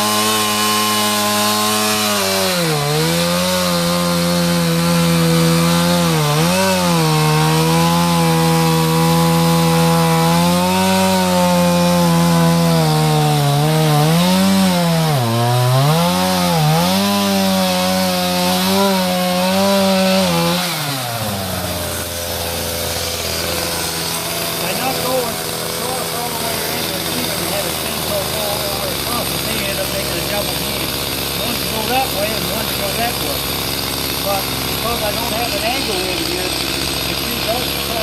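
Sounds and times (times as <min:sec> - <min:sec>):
chainsaw cutting wood: 0:00.0 - 0:38.0
chainsaw idling: 0:00.0 - 0:38.0.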